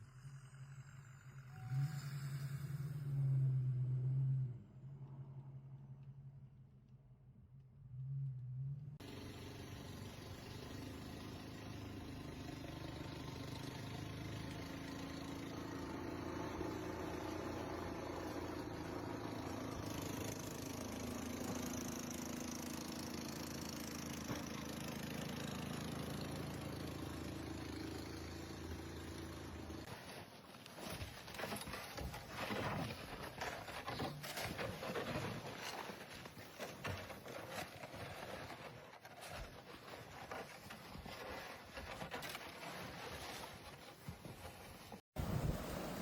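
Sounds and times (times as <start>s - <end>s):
engine running at low revs: 45.2s - 46.0s.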